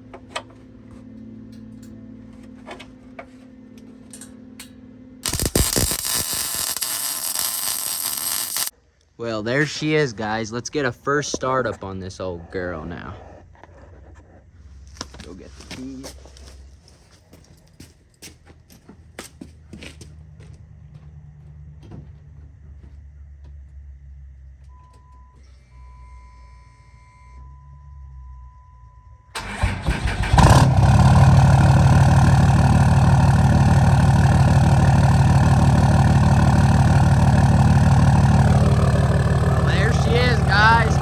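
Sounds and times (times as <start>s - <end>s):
pickup engine idling: 30.4s - 41.0s.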